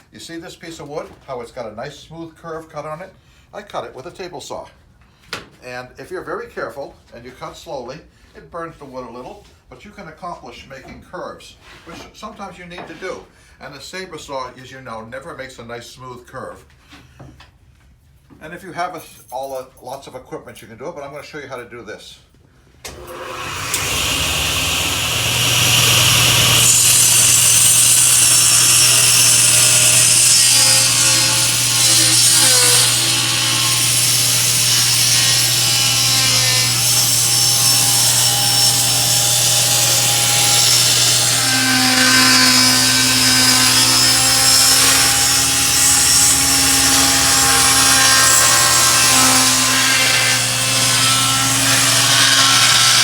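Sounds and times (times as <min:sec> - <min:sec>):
table saw cutting board: 0:22.9 - 0:53.0.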